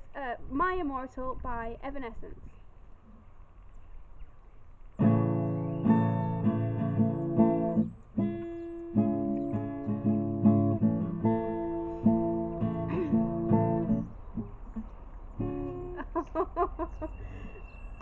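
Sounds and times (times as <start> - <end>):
acoustic guitar chords: 5.0 - 16.2.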